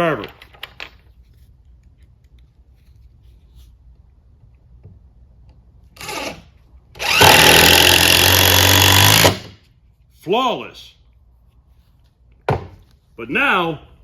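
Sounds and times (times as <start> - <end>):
impact driver hammering screw: 7.0 - 9.6.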